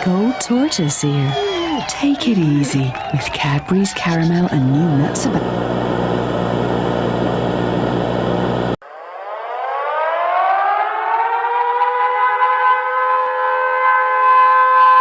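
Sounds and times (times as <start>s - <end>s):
civil defence siren wailing: 0.0s - 5.7s, 8.8s - 15.0s
loud buzzing static: 4.4s - 8.8s.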